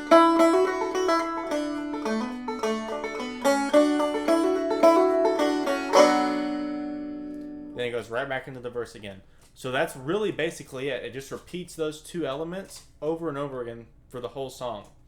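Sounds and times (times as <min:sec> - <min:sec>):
banjo plucked riff: 0:00.0 - 0:08.0.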